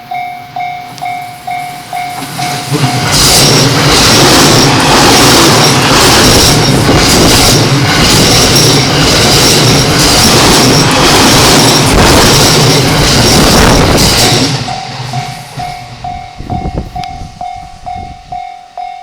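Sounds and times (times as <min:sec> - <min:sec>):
train wheels rushing on rail: 0:00.0 - 0:19.0
repeating wheel clatter: 0:02.1 - 0:16.9.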